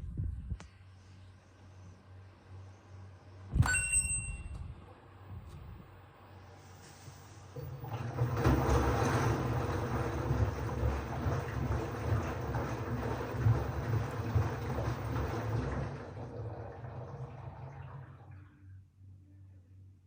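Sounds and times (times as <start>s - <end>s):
washing machine humming: 1.3s - 19.9s
washing machine water rushing: 7.2s - 18.6s.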